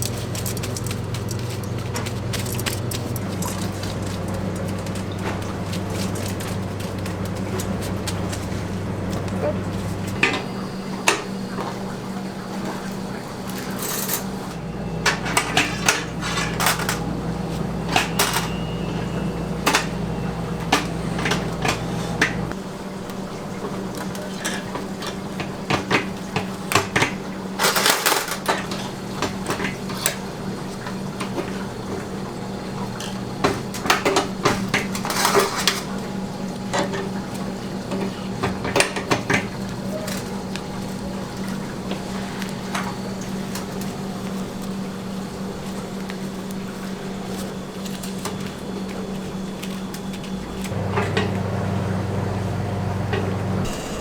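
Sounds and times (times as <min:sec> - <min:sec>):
metal utensils and pans clattering: 0:00.0 - 0:11.3, 0:13.4 - 0:22.6, 0:24.0 - 0:31.6, 0:32.9 - 0:43.9
low machine hum: 0:00.0 - 0:26.7, 0:28.2 - 0:54.0.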